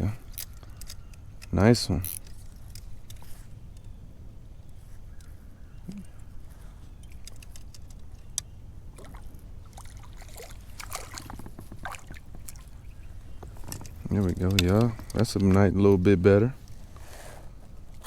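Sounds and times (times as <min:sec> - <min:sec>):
water splashing and sloshing: 0:08.9 - 0:15.2
light clicks and knocks: 0:10.7 - 0:16.0.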